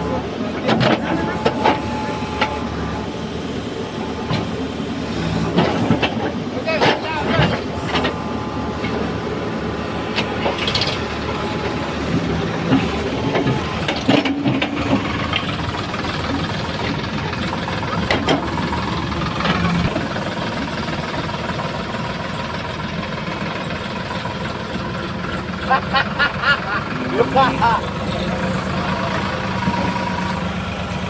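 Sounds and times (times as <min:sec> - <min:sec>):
heavy diesel engine running: 0:00.0 - 0:31.0.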